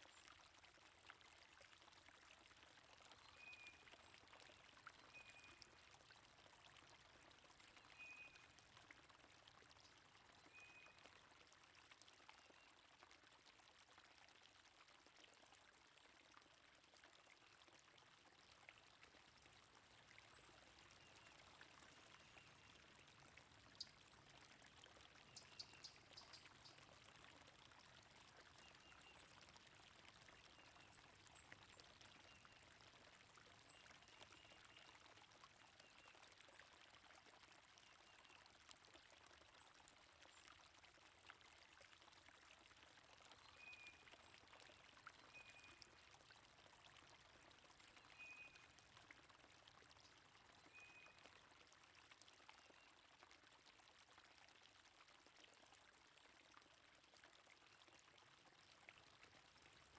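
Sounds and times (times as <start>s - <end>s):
stream water flowing: 0.0s - 59.9s.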